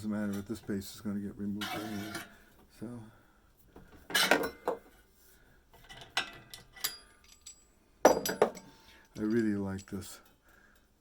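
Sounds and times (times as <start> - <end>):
metal tools clinking: 5.8 - 10.3.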